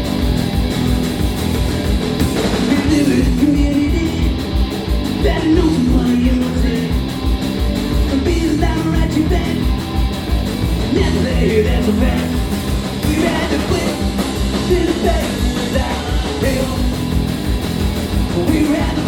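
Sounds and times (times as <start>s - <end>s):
punk rock band playing: 0.0s - 19.0s
person singing: 2.5s - 4.4s, 5.2s - 7.0s, 8.0s - 9.8s, 10.9s - 17.0s, 18.3s - 19.0s.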